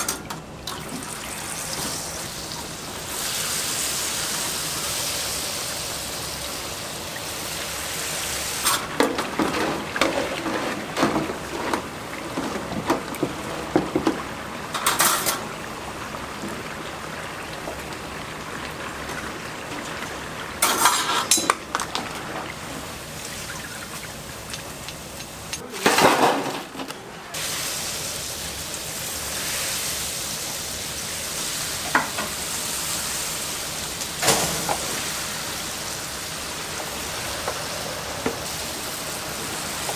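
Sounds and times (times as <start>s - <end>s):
metal utensils clattering on pans: 0.0s - 0.4s, 8.6s - 15.5s, 20.6s - 22.5s, 24.4s - 27.0s, 34.2s - 35.0s
food sizzling in hot oil: 1.0s - 9.0s, 27.4s - 39.9s.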